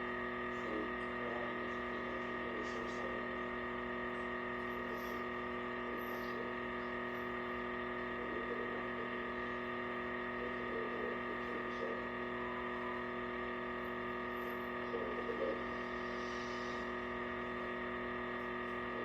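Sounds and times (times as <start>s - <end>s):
electrical hum: 0.0s - 19.0s
faint muffled sounds: 0.5s - 19.0s.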